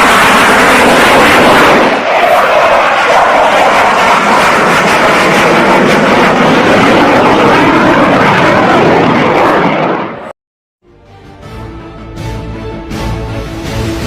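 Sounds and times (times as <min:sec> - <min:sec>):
jet aircraft engine noise: 0:00.0 - 0:10.4.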